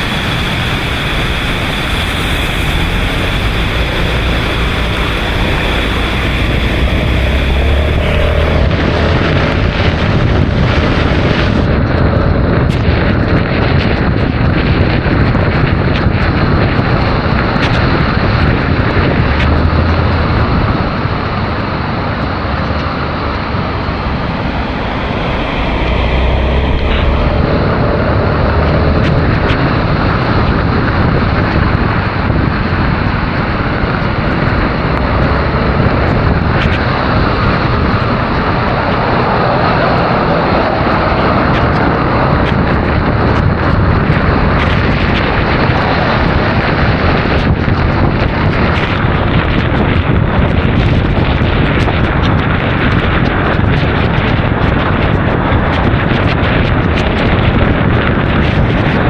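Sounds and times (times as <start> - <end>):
scooter engine: 0.0 - 13.0, 16.7 - 49.0
road noise: 0.0 - 59.0
wind buffeting microphone: 0.0 - 59.0.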